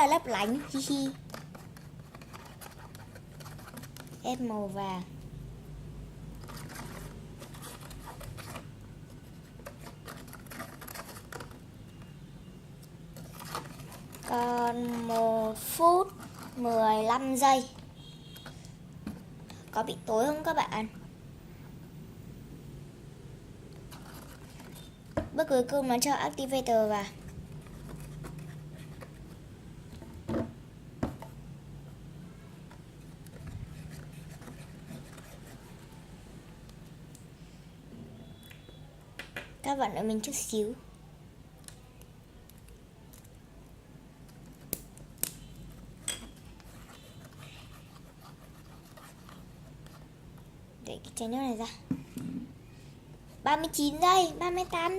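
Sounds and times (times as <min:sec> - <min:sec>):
slime mixing handling noises: 0:00.0 - 0:05.1, 0:12.9 - 0:20.9.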